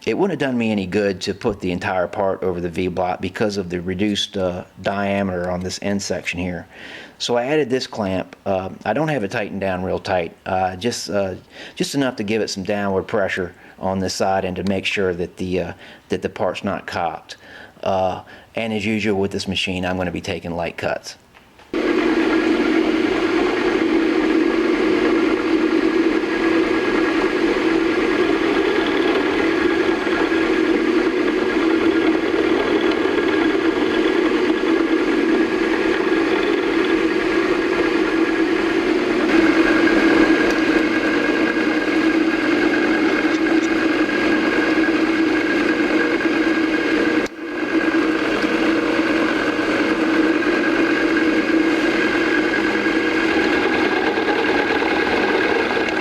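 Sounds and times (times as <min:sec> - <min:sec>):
high-pitched whine: 0:21.8 - 0:44.0
milling machine hum: 0:21.8 - 0:56.0.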